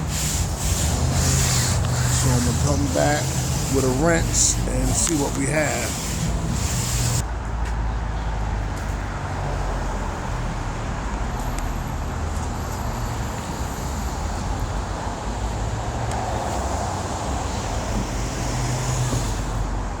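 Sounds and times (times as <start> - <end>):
pressure washer engine drone: 0.0 - 7.2
water spray hiss: 0.0 - 7.2.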